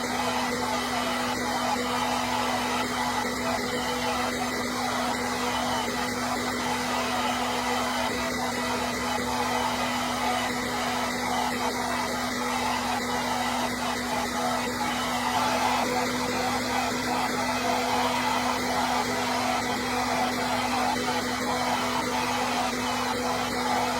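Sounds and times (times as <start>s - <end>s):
hair dryer running: 0.0s - 23.9s.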